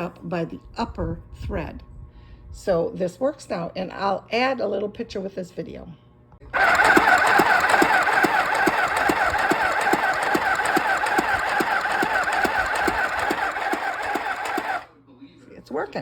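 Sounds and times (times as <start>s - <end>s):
needle mechanism clicking: 6.6s - 14.9s
sewing machine running: 6.6s - 14.9s.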